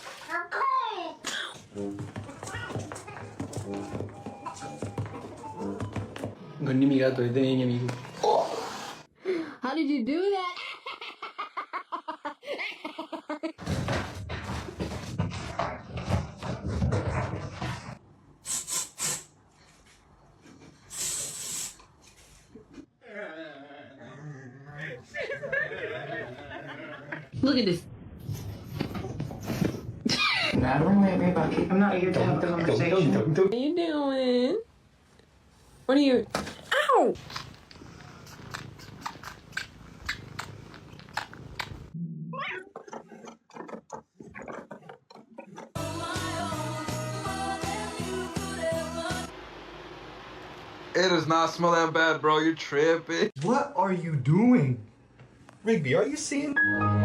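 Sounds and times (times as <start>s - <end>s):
pet scuffling: 1.9s - 6.4s
breathy hissy puffs: 18.4s - 19.4s, 20.8s - 22.5s
cat rising cry: 42.3s - 42.8s.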